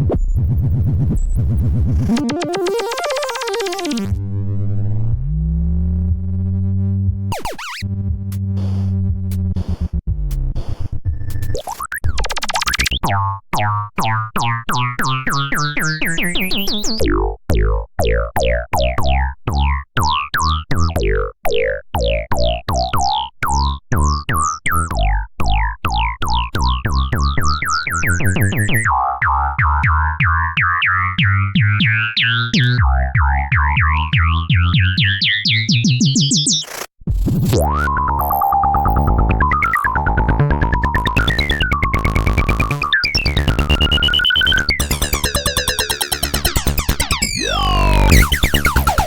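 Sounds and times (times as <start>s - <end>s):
synthesizer tones: 2.0s - 4.2s, 7.3s - 7.9s, 15.2s - 17.2s, 37.4s - 49.0s
tones sliding upward in pitch: 2.1s - 4.2s, 7.3s - 7.8s, 37.6s - 49.0s.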